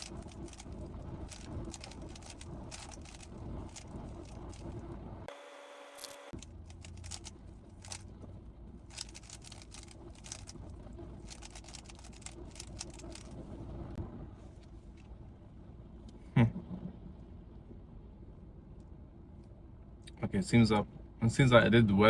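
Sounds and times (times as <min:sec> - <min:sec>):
puzzle cube clicking: 0:01.3 - 0:04.6.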